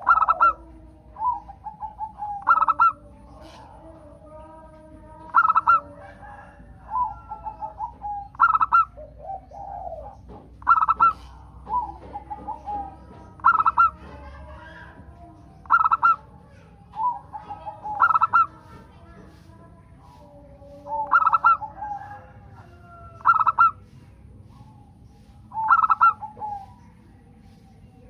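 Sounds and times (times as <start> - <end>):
doves cooing: 0.0 - 28.0.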